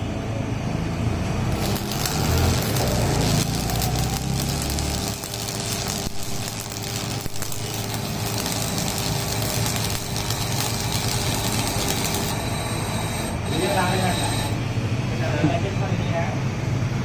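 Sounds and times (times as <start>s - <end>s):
machine motor humming: 1.5s - 14.7s.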